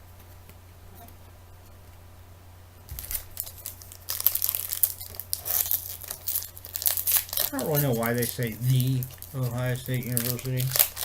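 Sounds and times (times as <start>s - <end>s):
steady low hum: 0.0s - 11.0s
foil wrapper crinkling and tearing: 2.9s - 11.0s.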